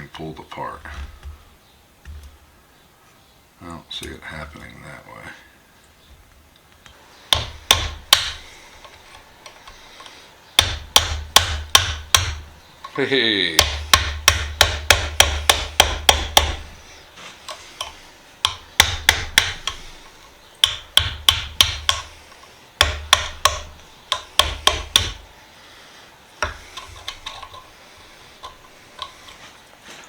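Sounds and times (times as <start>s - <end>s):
hammer striking metal tool: 7.3s - 8.5s, 10.6s - 12.5s, 13.6s - 16.7s, 17.8s - 19.8s, 20.6s - 22.1s, 22.8s - 25.2s.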